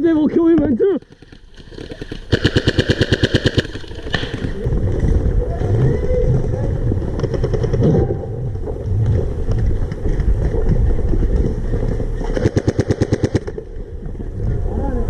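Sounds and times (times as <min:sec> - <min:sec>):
electric rifle firing bursts: 0:01.2 - 0:04.5
low rumble on microphone: 0:03.8 - 0:12.5, 0:13.3 - 0:15.0.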